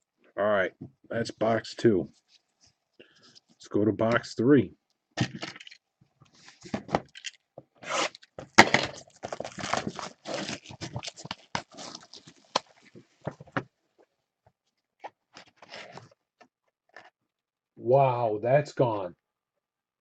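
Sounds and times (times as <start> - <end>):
plastic wrapping crinkling and tearing: 6.5 - 13.4.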